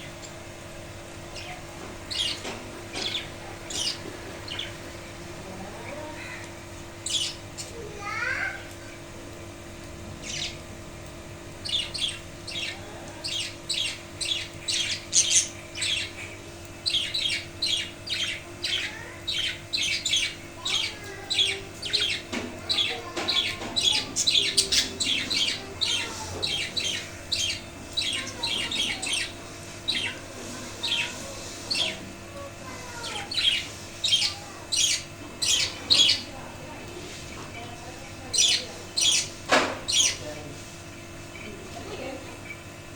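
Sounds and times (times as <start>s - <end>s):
budgerigars twittering: 1.3s - 8.4s, 10.1s - 10.6s, 11.6s - 42.6s
budgerigars squawking: 11.6s - 32.0s, 32.6s - 36.4s, 37.6s - 40.3s.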